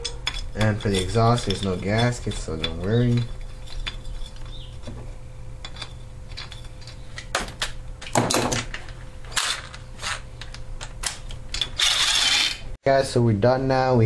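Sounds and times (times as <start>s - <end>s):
metal tools clinking: 0.0s - 4.8s, 5.6s - 7.3s.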